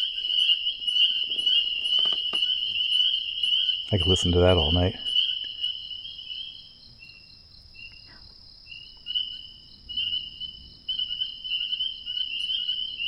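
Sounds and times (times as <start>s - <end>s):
frogs trilling: 0.0s - 13.0s.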